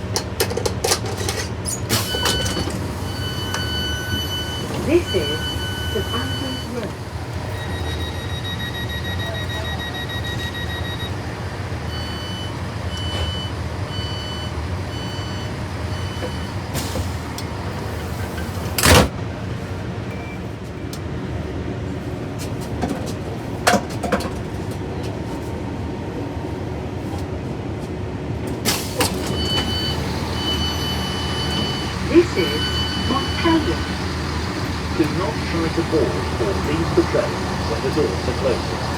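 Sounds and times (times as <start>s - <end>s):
train engine humming: 0.0s - 22.6s, 28.6s - 38.9s
door warning beeps: 1.9s - 17.0s, 28.9s - 38.9s.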